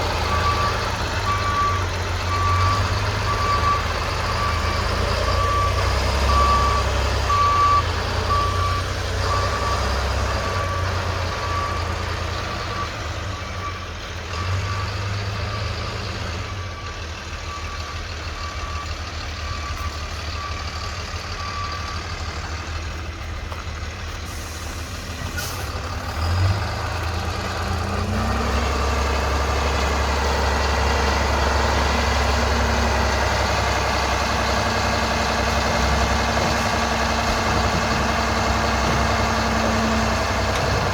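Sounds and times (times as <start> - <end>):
vehicle backup alarm beeping: 0.0 - 22.7
low engine rumble: 16.4 - 40.9.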